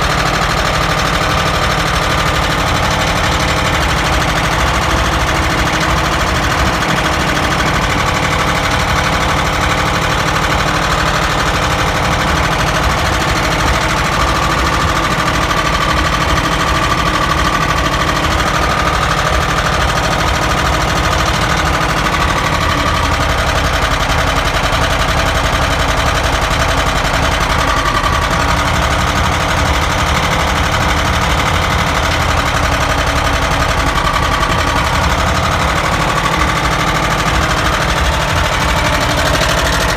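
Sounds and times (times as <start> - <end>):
car engine knocking: 0.0 - 39.9.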